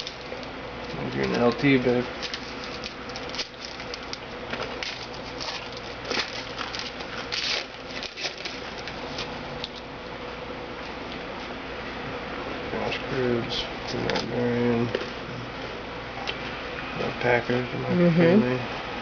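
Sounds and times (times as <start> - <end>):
cards and wrappers rustling: 0.0 - 9.9
faint hum: 0.0 - 19.0.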